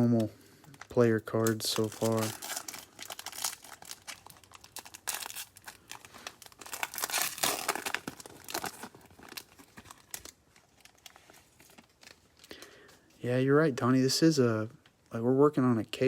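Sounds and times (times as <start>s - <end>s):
wrapper tearing and crinkling: 0.6s - 12.6s.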